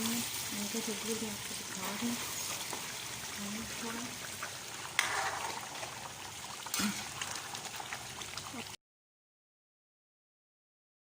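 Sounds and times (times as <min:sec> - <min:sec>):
food bubbling in pot: 0:00.1 - 0:08.8.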